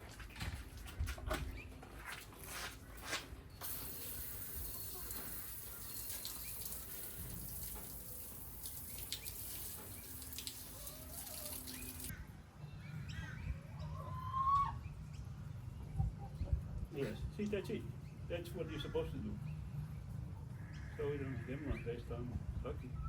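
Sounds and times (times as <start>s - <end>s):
water running from a tap: 3.6s - 12.1s.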